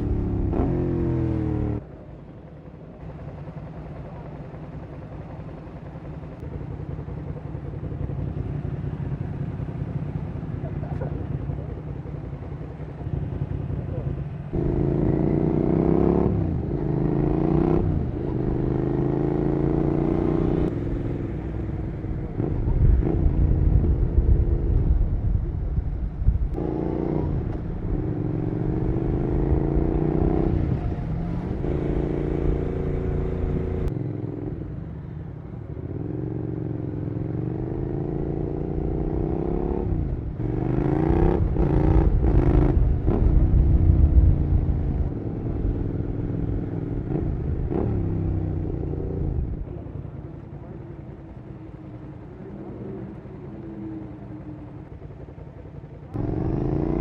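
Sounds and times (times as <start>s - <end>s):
motorcycle engine accelerating: 0.0s - 57.0s
low rumble: 20.6s - 33.9s, 39.8s - 57.0s.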